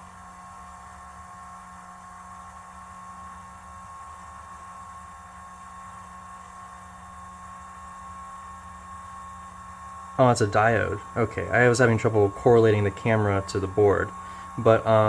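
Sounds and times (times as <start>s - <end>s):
electrical hum: 0.0s - 15.0s
thin high whine: 0.0s - 15.0s.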